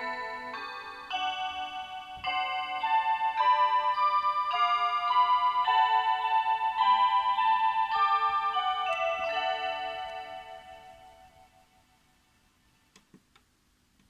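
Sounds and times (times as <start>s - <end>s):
electronic chime melody: 0.0s - 10.8s.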